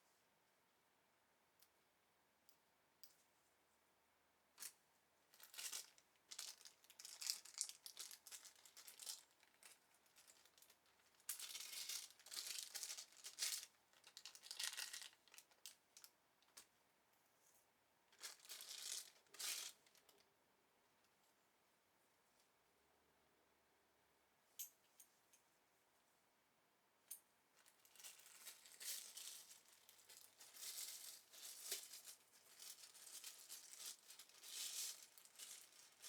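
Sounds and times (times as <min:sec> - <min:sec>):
packaging rustling: 0:27.9 - 0:36.0.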